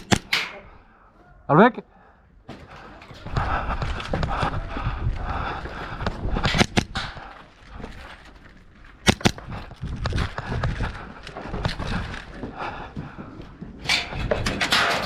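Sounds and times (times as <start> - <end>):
airsoft guns firing: 0.0 - 0.6, 6.4 - 7.2, 9.0 - 9.5.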